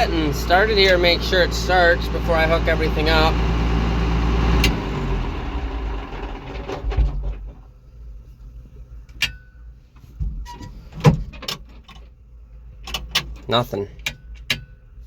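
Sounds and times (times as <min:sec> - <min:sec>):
tractor engine running down: 0:00.0 - 0:07.5.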